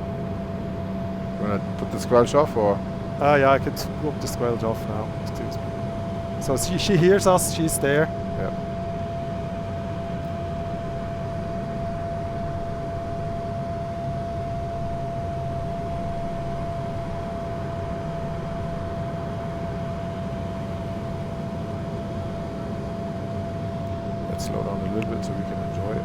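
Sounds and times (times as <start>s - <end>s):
airflow rushing in cockpit: 0.0s - 13.5s, 16.8s - 26.0s
jet engine hum: 0.0s - 26.0s
steady high tone: 6.3s - 8.8s.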